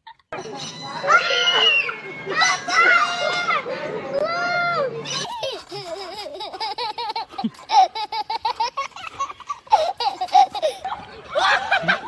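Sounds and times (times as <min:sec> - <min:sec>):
high-pitched laughter: 0:05.0 - 0:12.0.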